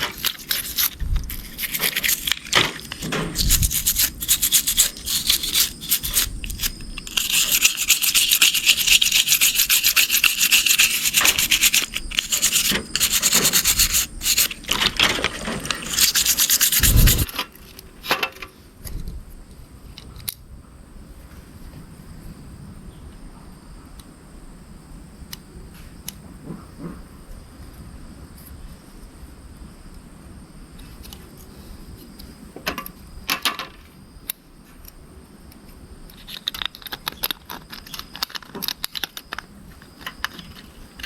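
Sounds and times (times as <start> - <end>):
brisk scrubbing strokes: 0.0 - 17.3.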